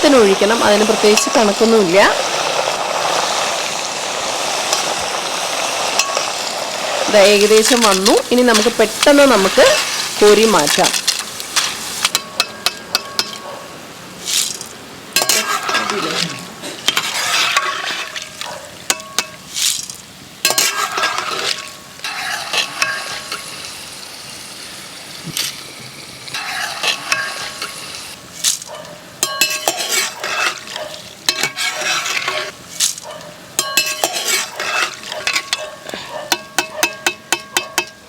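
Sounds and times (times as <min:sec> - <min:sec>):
food deep-frying and sizzling: 0:00.0 - 0:38.0
metal ladle scraping and clinking: 0:14.3 - 0:23.5, 0:26.3 - 0:28.6, 0:29.2 - 0:38.0.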